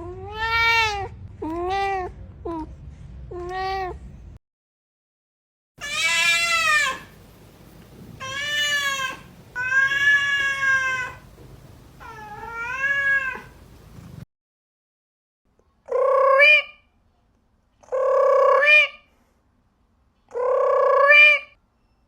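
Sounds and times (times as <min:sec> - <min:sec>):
cat meowing: 0:05.8 - 0:14.2.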